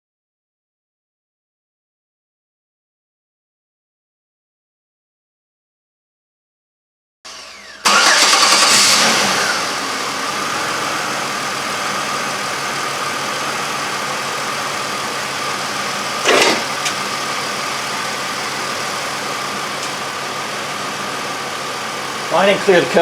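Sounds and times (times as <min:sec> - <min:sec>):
car engine starting and idling: 0:07.3 - 0:23.0.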